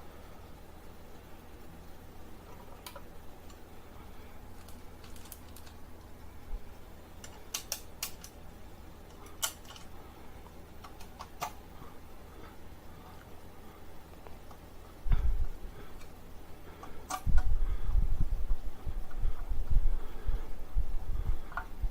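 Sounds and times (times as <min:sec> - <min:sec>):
low steady hum: 0:00.0 - 0:21.9.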